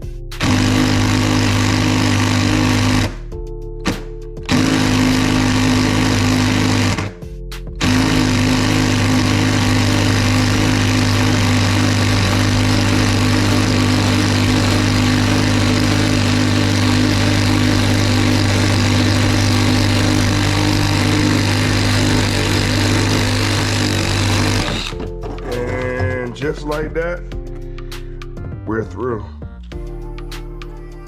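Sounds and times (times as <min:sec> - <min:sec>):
power drill cutting: 0:00.0 - 0:03.2, 0:03.9 - 0:07.2, 0:07.8 - 0:25.0.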